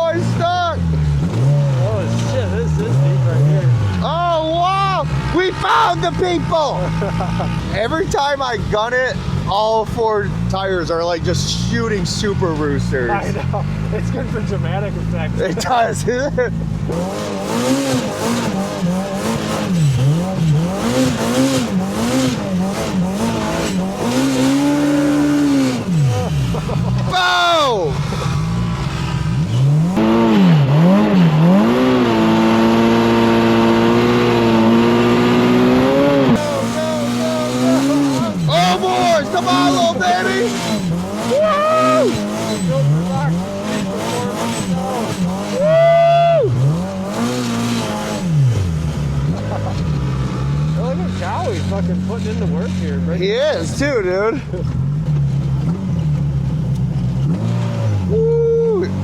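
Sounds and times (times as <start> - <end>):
engine revving: 0.0 - 59.0
tires spinning in snow: 0.0 - 59.0
person shouting woo: 27.1 - 27.9, 41.3 - 42.2, 45.5 - 46.6, 58.1 - 59.0.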